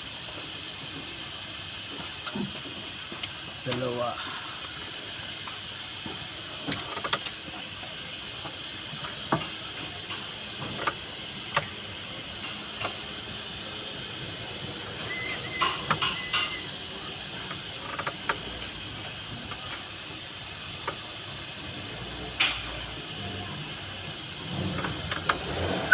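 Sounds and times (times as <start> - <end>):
steady hiss: 0.0 - 25.9
hand tools tapping engine parts: 5.4 - 7.6, 8.4 - 13.2, 15.4 - 20.2.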